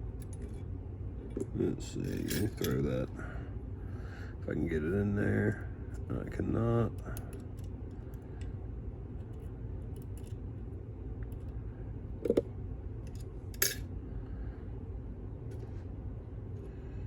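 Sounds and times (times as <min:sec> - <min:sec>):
steady low hum: 0:00.0 - 0:17.0
lock-picking tools clinking: 0:02.0 - 0:03.0.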